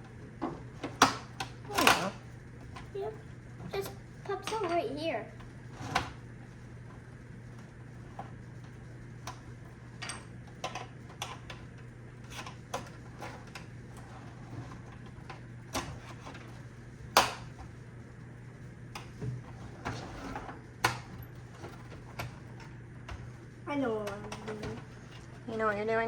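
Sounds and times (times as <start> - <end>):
low steady hum: 0.0 - 26.0.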